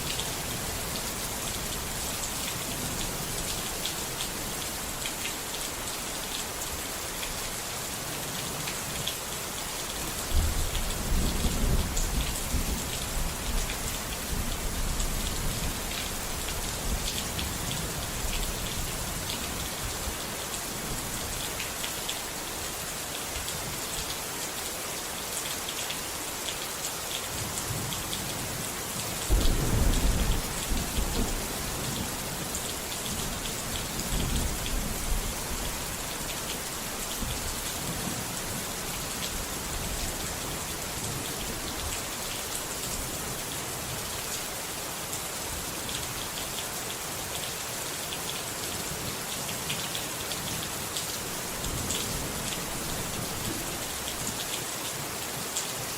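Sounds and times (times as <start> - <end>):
steady rain falling: 0.0 - 55.9
thunder rumbling: 29.3 - 31.5.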